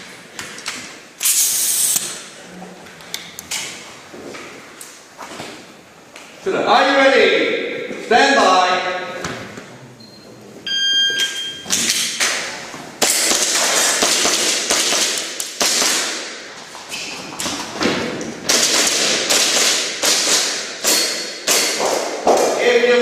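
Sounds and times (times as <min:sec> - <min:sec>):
shot timer beep: 0:10.0 - 0:11.7
airsoft pistol shots: 0:13.0 - 0:16.4.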